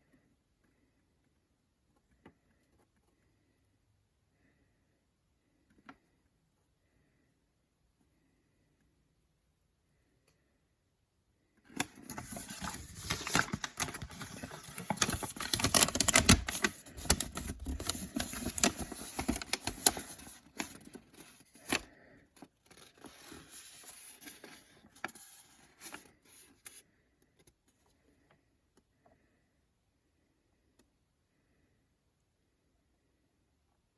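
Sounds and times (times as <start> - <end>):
packaging tearing and crinkling: 11.8 - 21.8.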